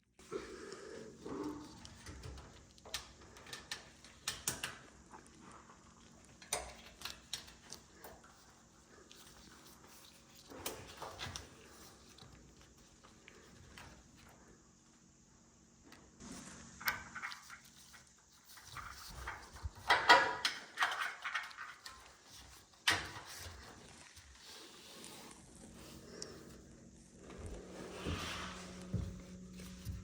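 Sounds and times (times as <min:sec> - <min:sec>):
hard appliance parts clacking: 0:19.0 - 0:23.5.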